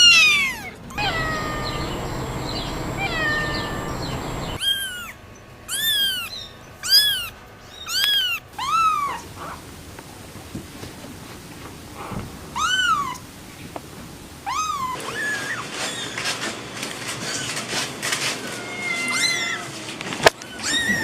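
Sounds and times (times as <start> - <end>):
kittens mewing: 0.9 - 4.7.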